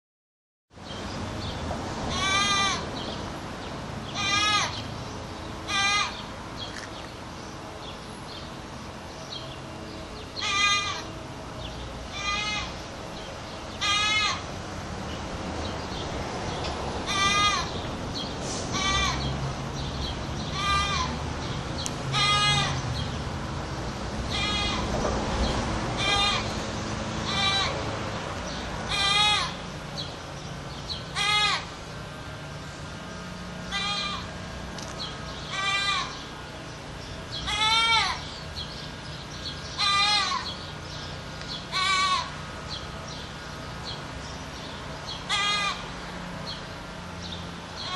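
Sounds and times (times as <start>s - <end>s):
goat bleating: 2.1s - 2.8s, 4.2s - 4.7s, 5.7s - 6.2s, 10.4s - 11.1s, 12.1s - 12.7s, 13.8s - 14.4s, 17.1s - 17.7s, 18.7s - 19.2s, 20.5s - 21.1s, 22.1s - 22.8s, 24.3s - 24.8s, 26.0s - 26.5s, 27.2s - 27.8s, 28.9s - 29.6s, 31.2s - 31.7s, 33.7s - 34.3s, 35.5s - 36.2s, 37.5s - 38.2s, 39.8s - 40.5s, 41.7s - 42.3s, 45.3s - 45.9s.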